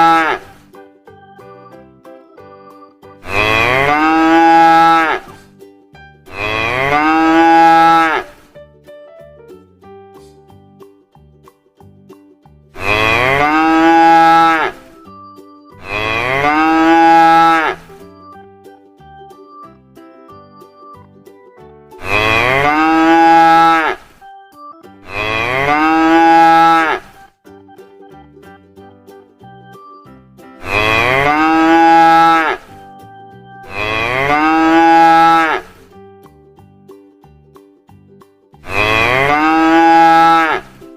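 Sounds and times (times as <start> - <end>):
cow mooing: 0.0 - 0.5, 3.2 - 5.4, 6.3 - 8.4, 12.8 - 14.9, 15.8 - 17.9, 22.0 - 24.1, 25.0 - 27.2, 30.6 - 32.8, 33.7 - 35.8, 38.7 - 40.7
soft background music: 0.0 - 40.9.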